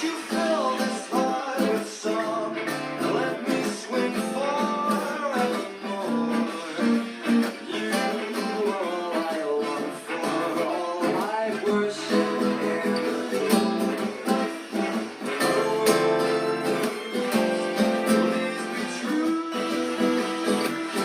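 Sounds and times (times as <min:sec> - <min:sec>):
guitar melody with sliding notes: 0:00.0 - 0:21.0.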